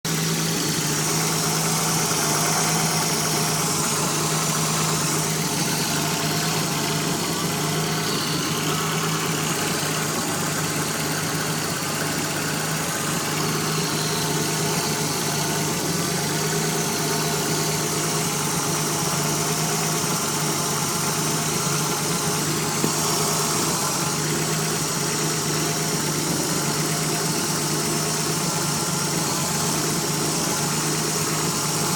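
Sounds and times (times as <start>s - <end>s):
car engine idling: 0.0s - 31.9s.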